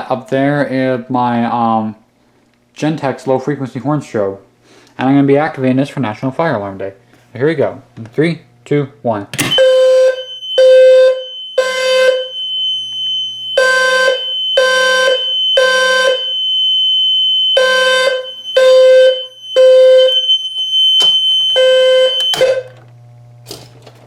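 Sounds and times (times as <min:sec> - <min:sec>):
low fire alarm horn blasts: 0:09.5 - 0:22.8.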